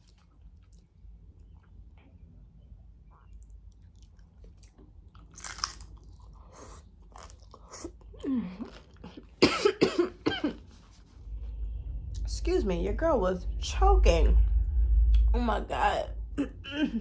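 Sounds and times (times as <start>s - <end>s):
woman chewing crunchy food: 0.0s - 1.8s, 3.6s - 9.4s
woman choking and coughing: 8.3s - 10.6s, 16.4s - 17.0s.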